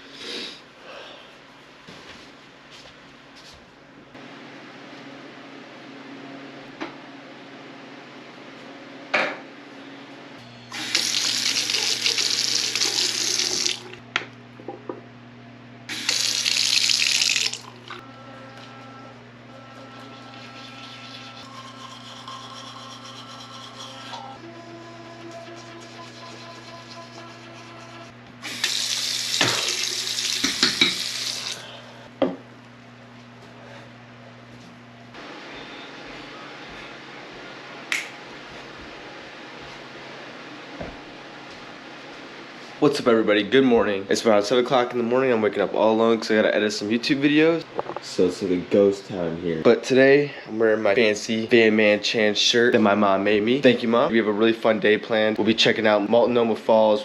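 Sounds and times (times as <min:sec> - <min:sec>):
water running from tap into sink: 0:10.8 - 0:14.0, 0:15.9 - 0:18.0, 0:28.5 - 0:31.6.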